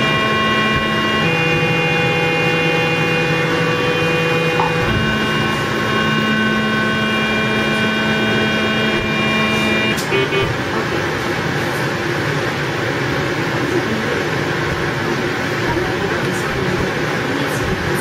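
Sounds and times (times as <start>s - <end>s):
steady activation tone: 0.0s - 10.4s.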